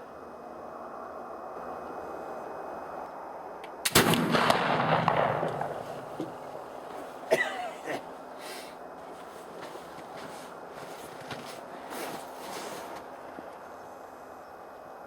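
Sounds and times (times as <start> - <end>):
rifle shot: 3.8 - 6.5.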